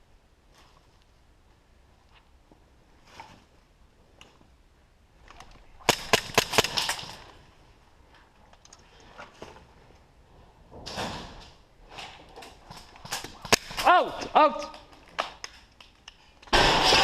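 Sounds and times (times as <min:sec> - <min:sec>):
airsoft guns firing pops: 0:05.8 - 0:07.1, 0:13.1 - 0:13.8.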